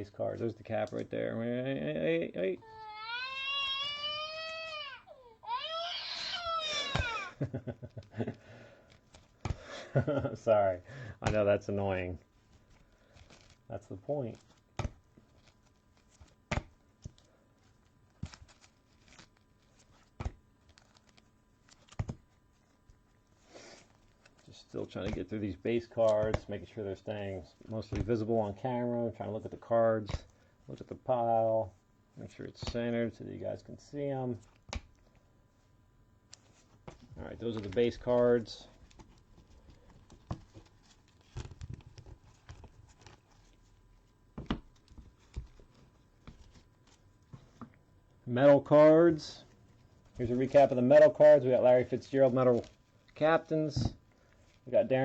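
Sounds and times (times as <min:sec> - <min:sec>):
cards tapping on a pile: 0:14.5 - 0:17.3, 0:19.9 - 0:22.2, 0:25.0 - 0:25.3
soft brushing of cards: 0:17.0 - 0:26.4.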